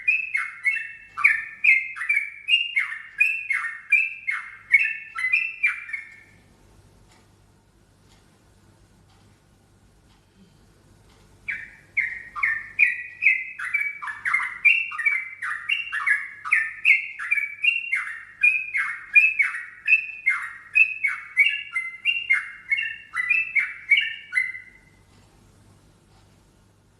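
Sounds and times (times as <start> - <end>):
bird chirping: 0.0 - 6.5, 11.4 - 25.2.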